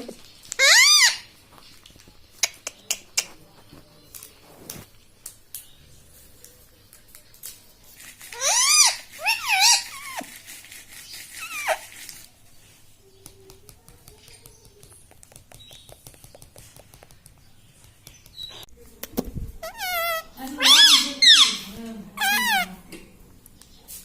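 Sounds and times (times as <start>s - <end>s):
parakeet squawking: 0.6s - 1.3s, 8.4s - 10.3s, 11.4s - 11.9s, 19.6s - 22.8s.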